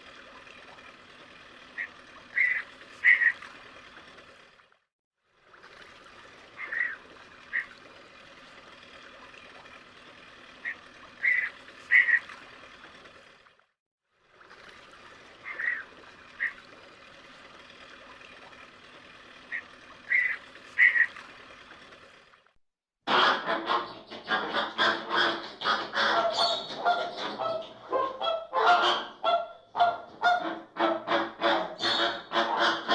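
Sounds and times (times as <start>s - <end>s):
sharp bird calls: 1.8s - 3.4s, 10.6s - 12.2s, 19.5s - 21.1s.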